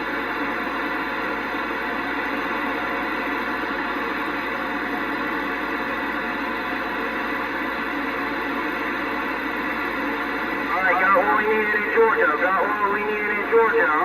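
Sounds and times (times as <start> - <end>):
radio static hiss: 10.7 - 14.0.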